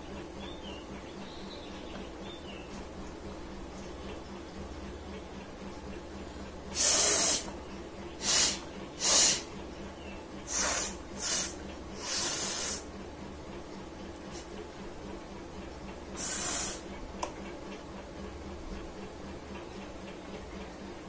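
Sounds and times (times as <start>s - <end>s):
sharp sniffs and snorts: 10.5s - 12.8s.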